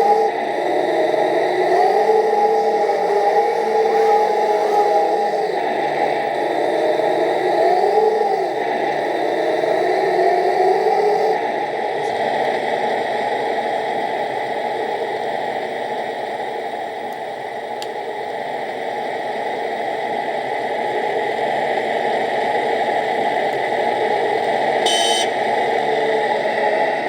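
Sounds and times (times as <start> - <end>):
toy excavator mechanical hum: 20.8 - 27.0
high squeak or beep: 24.8 - 25.3.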